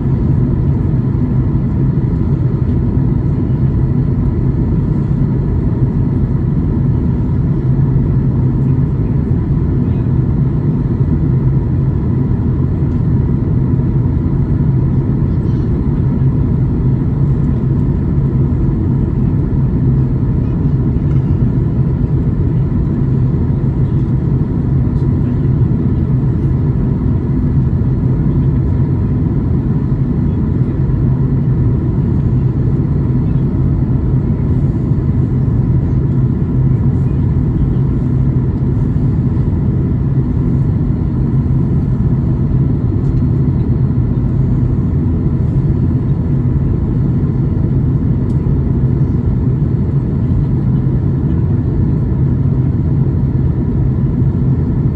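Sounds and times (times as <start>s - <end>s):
airplane cabin drone: 0.0s - 54.9s.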